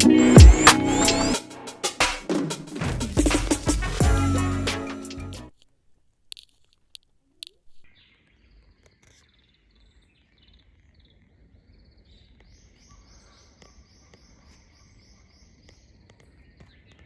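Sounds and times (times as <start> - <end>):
bird chirping: 0.0 - 1.9.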